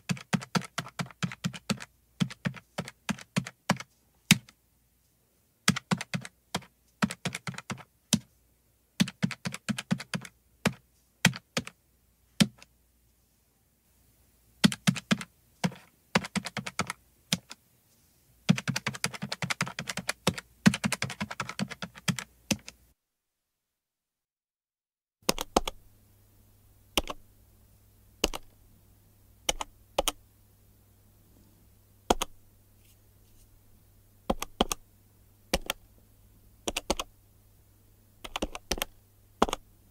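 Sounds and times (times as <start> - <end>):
faint low hum: 25.3 - 39.9
calculator buttons clicking: 34.3 - 34.8, 38.3 - 39.6.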